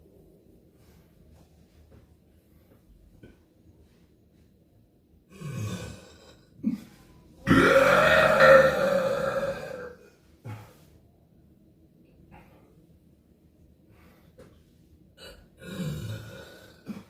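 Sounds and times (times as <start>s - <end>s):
person burping: 5.3s - 10.0s, 15.2s - 17.0s.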